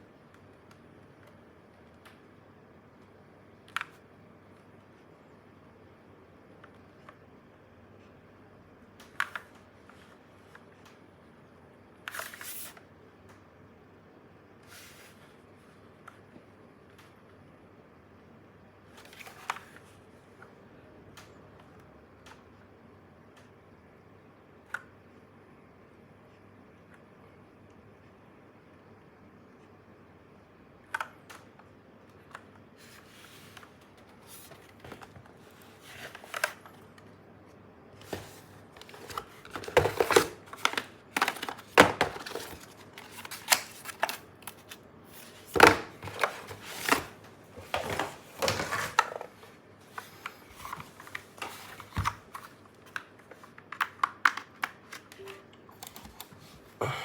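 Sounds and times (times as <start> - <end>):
plastic and paper crinkling: 32.8 - 37.0, 38.0 - 55.2.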